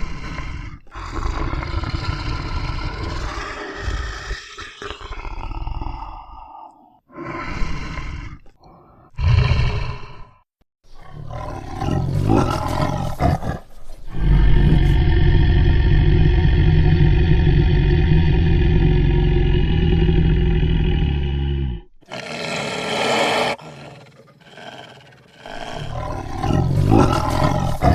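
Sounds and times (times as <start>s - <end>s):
monstrous bear roar: 0.0s - 10.4s, 11.0s - 27.9s.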